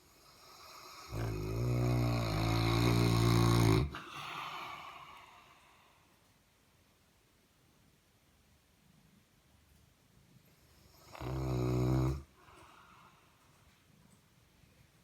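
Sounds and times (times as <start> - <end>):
dog snoring: 0.1 - 4.3, 10.8 - 12.3.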